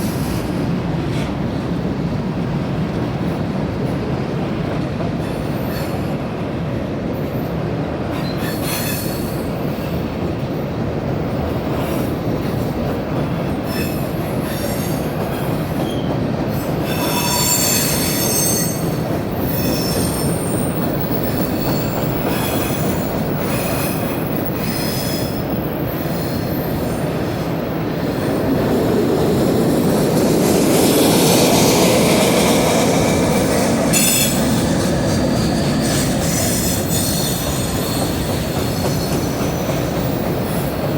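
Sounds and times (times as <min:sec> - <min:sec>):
train wheels rumbling on rails: 0:00.0 - 0:40.9
high-pitched wheel squeals: 0:16.9 - 0:26.9.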